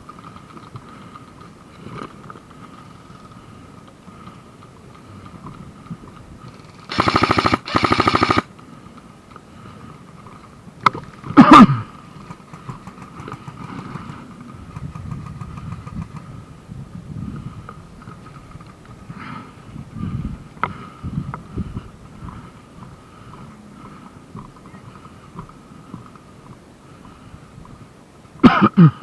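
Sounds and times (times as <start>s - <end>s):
airsoft gun full-auto bursts: 6.9s - 8.5s.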